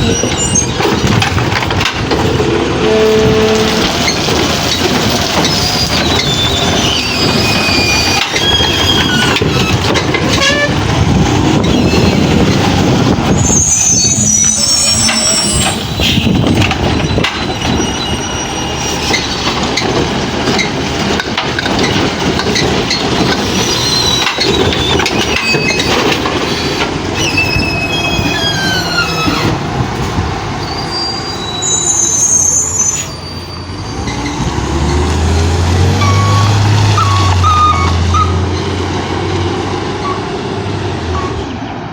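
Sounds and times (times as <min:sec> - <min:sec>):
very high squeals: 0:00.0 - 0:00.8, 0:05.4 - 0:10.7, 0:13.4 - 0:19.4, 0:23.4 - 0:29.6, 0:30.6 - 0:34.4
metallic squeals gliding down: 0:05.4 - 0:10.7, 0:13.4 - 0:16.3, 0:27.2 - 0:29.6, 0:30.6 - 0:35.1.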